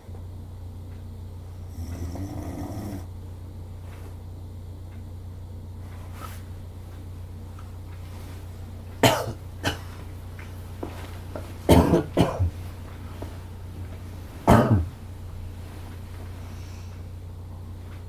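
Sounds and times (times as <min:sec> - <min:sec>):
person coughing in sleep: 0:09.0 - 0:10.0, 0:11.7 - 0:12.6, 0:14.4 - 0:15.0.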